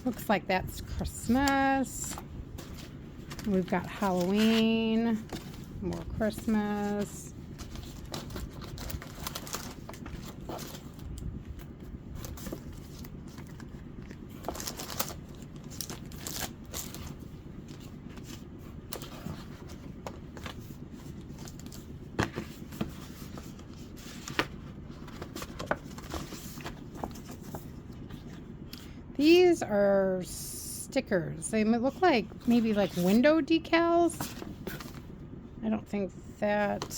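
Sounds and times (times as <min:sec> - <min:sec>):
paper rustling and crinkling: 0:00.0 - 0:28.6
low background hum: 0:00.0 - 0:36.9.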